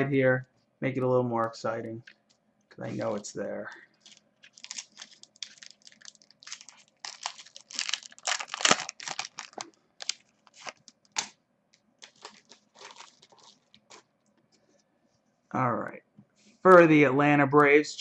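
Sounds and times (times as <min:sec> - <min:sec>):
card wrapping crinkling: 0:03.9 - 0:11.4, 0:12.0 - 0:14.2.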